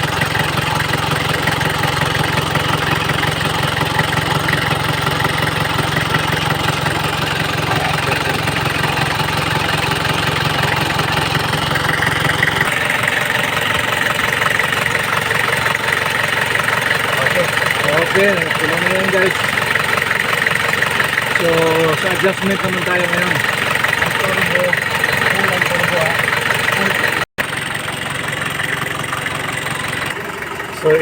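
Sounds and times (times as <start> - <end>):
diesel engine idling: 0.0 - 31.0.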